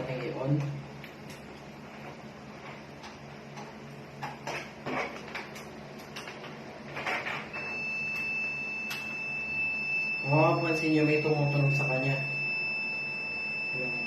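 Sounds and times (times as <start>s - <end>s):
computer fans humming: 0.0s - 14.0s
high-pitched motherboard beep: 7.6s - 14.0s.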